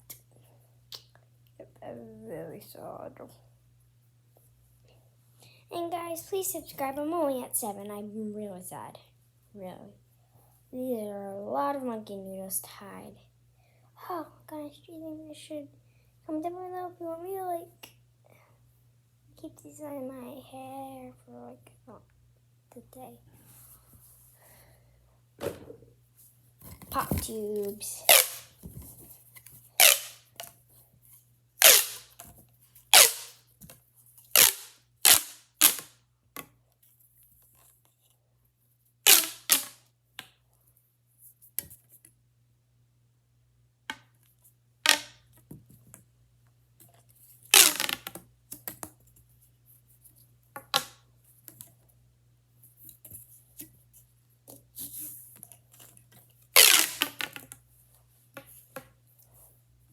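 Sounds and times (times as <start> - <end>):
plastic pop tubes popping: 28.1 - 28.6, 29.8 - 30.5, 31.6 - 32.3, 32.9 - 33.4, 34.4 - 35.9, 39.1 - 39.8, 47.6 - 48.8, 56.6 - 57.6.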